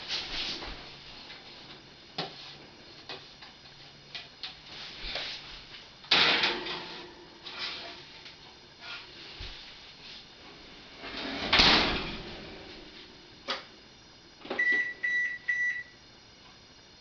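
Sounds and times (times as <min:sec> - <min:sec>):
oven door clatter and bang: 0:06.1 - 0:07.1, 0:11.0 - 0:12.4
short high oven beeps: 0:14.5 - 0:16.0.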